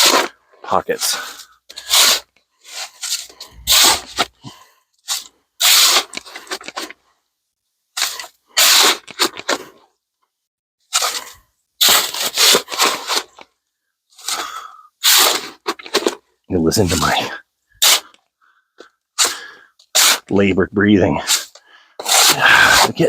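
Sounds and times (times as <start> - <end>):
shovel scraping concrete in tub: 1.8 - 6.1, 21.2 - 23.0.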